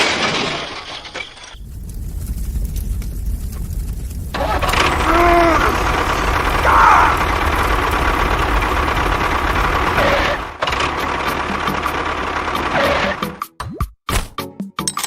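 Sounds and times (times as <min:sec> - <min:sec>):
tractor engine running: 0:01.6 - 0:13.4.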